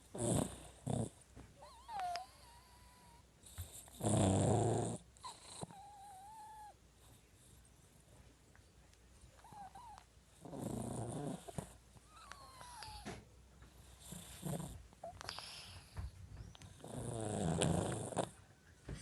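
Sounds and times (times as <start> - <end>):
cat snoring: 0.1 - 6.8, 9.4 - 13.1, 13.8 - 16.0, 16.7 - 18.4.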